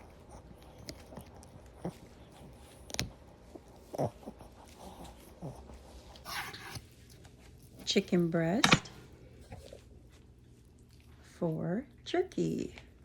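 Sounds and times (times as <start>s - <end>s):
dog crunching carrot: 0.0s - 7.9s.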